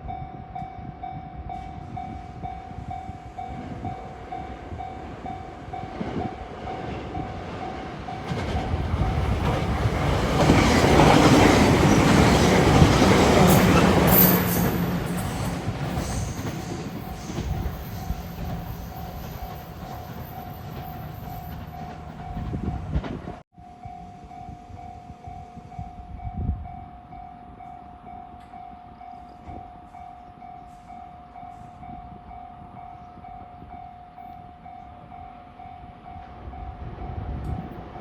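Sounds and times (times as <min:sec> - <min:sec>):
train rumbling over crossing: 0:00.0 - 0:38.0.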